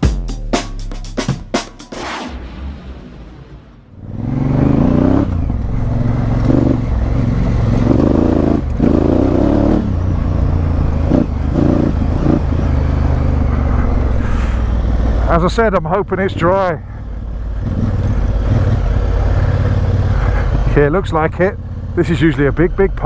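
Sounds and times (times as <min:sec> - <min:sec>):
motorcycle engine accelerating: 0:01.9 - 0:14.0.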